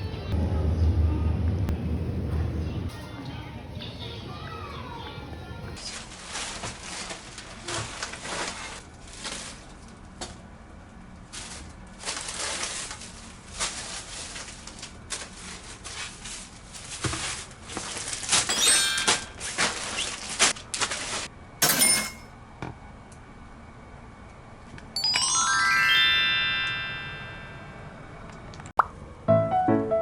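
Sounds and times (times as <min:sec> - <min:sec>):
handling rustles and scrapes: 0:05.8 - 0:10.0, 0:11.3 - 0:21.3
ringing clink: 0:21.6 - 0:22.3.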